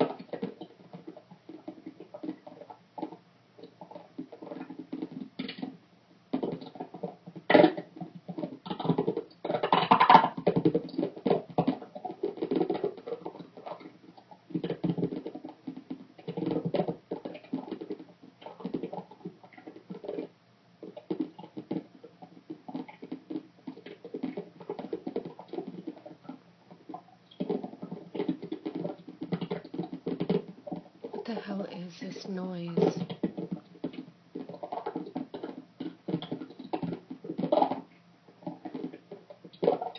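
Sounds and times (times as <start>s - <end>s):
rapid scratching and clicking: 0.0s - 20.3s.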